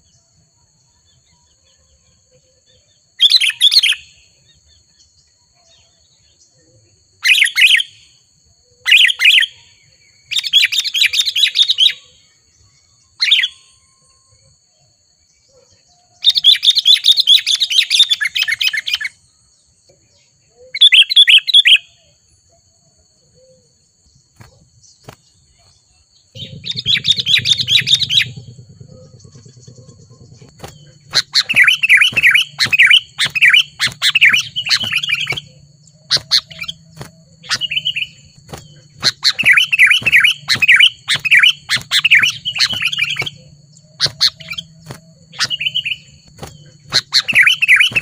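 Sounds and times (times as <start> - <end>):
bird chattering: 26.4 - 48.0.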